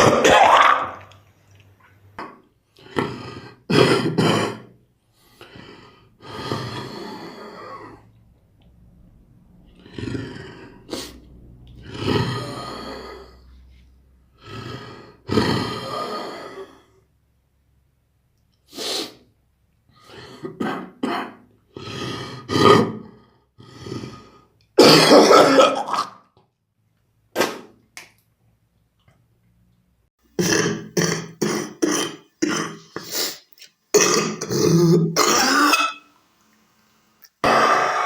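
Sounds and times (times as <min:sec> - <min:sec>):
person coughing wetly: 0:00.0 - 0:01.0, 0:03.7 - 0:04.7, 0:20.5 - 0:21.4, 0:24.8 - 0:26.1, 0:30.4 - 0:36.0.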